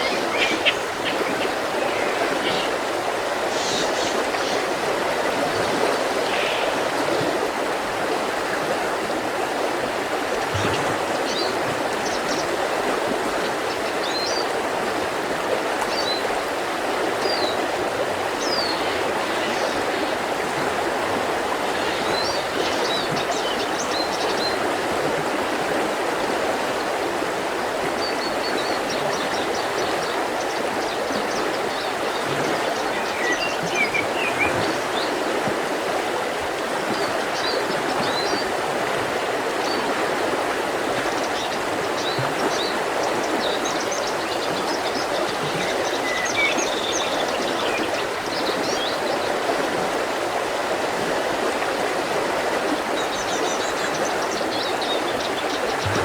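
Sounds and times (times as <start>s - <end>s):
small birds chirping: 0.0s - 4.9s
river rushing: 0.0s - 28.6s, 54.7s - 56.0s.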